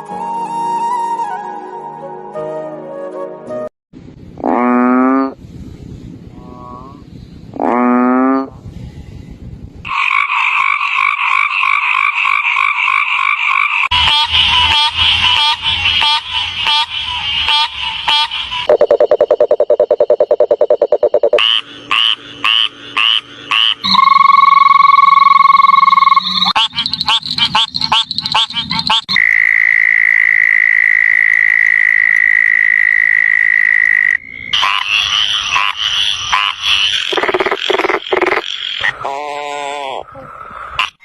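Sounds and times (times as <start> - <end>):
chorus of frogs calling: 9.9 - 18.8, 21.3 - 41.0
frog calls: 17.5 - 41.0.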